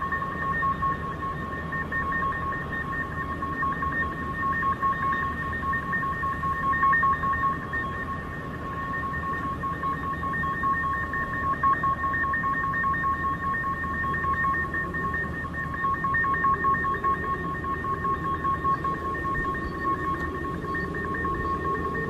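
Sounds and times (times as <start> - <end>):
two-tone fluttering hum: 0.0 - 22.0.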